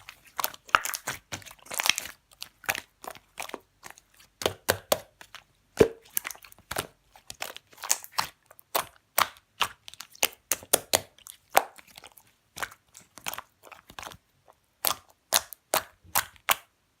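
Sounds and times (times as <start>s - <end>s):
slime squeezed wet clicks and pops: 14.8s - 16.7s.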